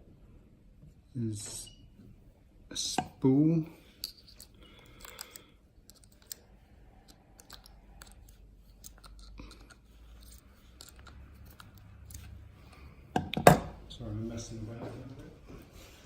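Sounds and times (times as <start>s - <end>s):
faint clicks of small lock parts: 4.0s - 13.5s.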